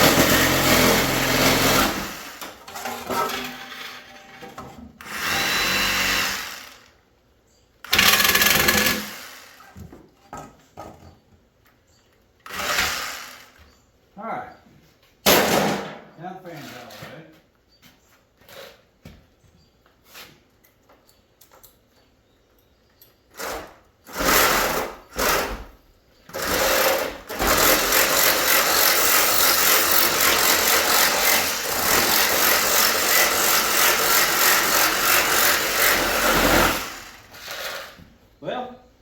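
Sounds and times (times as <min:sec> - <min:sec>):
power saw cutting metal coil: 0:00.0 - 0:04.3, 0:07.9 - 0:09.6, 0:26.4 - 0:38.0.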